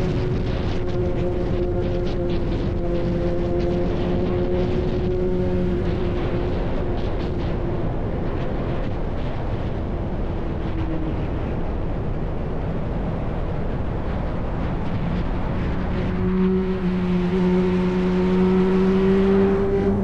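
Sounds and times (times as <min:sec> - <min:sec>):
motorcycle engine running: 0:00.0 - 0:08.3, 0:15.6 - 0:20.0
steady rushing noise: 0:00.0 - 0:20.0.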